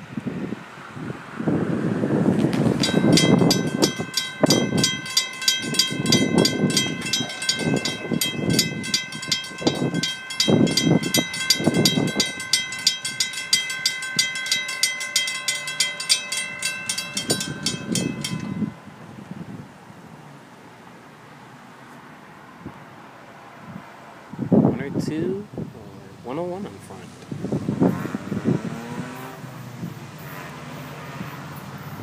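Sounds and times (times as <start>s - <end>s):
railroad crossing bell ringing: 2.8s - 19.4s.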